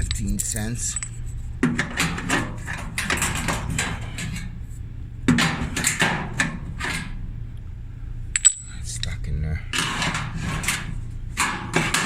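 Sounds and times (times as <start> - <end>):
metal tool scraping sheet metal: 0.0 - 4.6, 5.3 - 7.2, 9.7 - 12.0.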